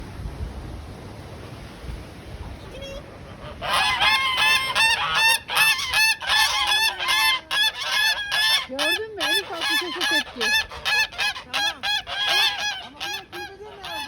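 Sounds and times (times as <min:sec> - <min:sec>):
low hiss of wind: 0:00.0 - 0:14.0
geese honking: 0:03.3 - 0:14.0.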